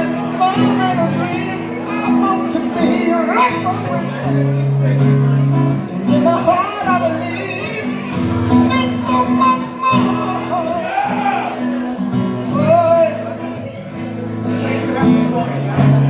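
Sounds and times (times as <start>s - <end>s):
man singing: 0.0s - 16.0s
strummed acoustic guitar: 0.0s - 16.0s.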